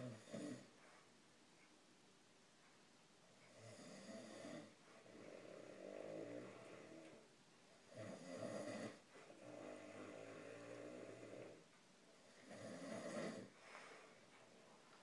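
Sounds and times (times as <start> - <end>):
man snoring heavily: 0.0 - 0.7, 3.6 - 7.1, 7.9 - 11.6, 12.4 - 13.5.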